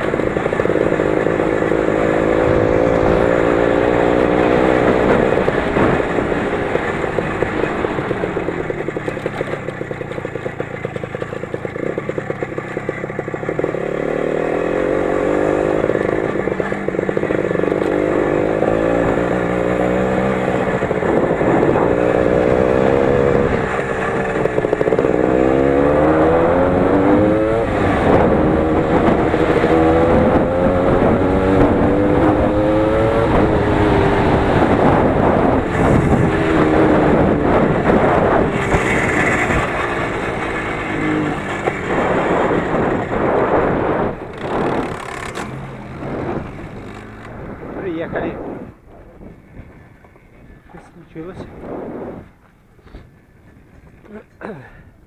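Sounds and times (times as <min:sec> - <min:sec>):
motorcycle engine revving: 0:00.0 - 0:54.8.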